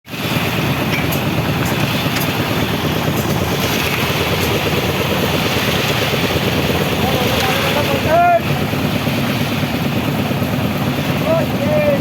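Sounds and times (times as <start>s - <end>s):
construction machinery engine running: 0.1s - 12.0s.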